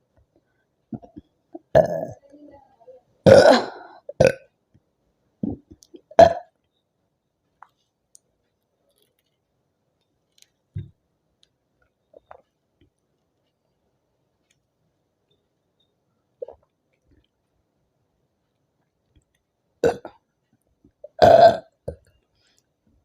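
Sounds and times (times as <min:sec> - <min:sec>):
woman burping: 0:01.0 - 0:02.3, 0:03.2 - 0:04.5, 0:05.4 - 0:06.5, 0:19.8 - 0:20.2, 0:21.0 - 0:22.0.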